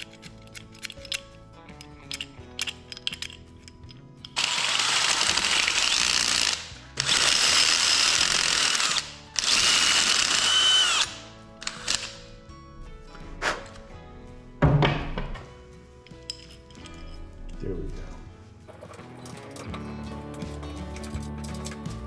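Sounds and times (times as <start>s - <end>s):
background music: 0.0s - 22.0s
power drill whining: 4.4s - 12.3s.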